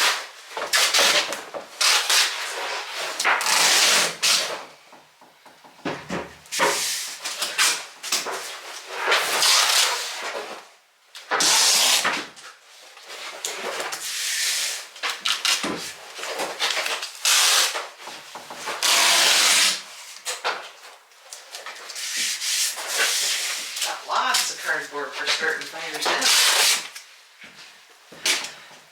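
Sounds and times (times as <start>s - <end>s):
cardboard ripping: 0.0s - 4.6s, 7.5s - 10.4s, 11.3s - 12.3s, 14.5s - 18.0s, 18.6s - 20.4s, 25.9s - 27.0s.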